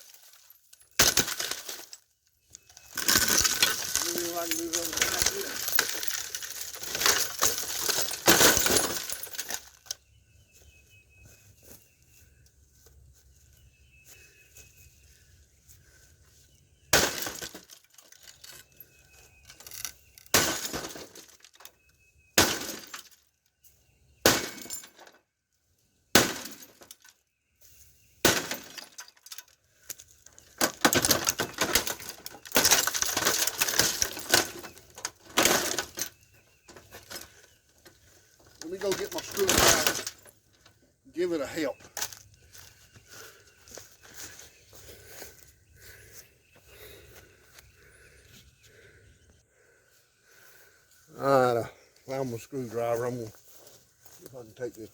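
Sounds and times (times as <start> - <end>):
glass shattering: 0.0 - 2.1, 2.7 - 9.9, 16.9 - 18.6, 19.6 - 21.7, 22.4 - 23.2, 24.2 - 25.2, 26.2 - 27.2, 28.2 - 29.5, 30.4 - 37.3, 38.6 - 40.3
glass crunching and clinking: 0.0 - 10.1, 16.8 - 23.3, 24.2 - 25.2, 26.1 - 27.2, 28.2 - 43.1.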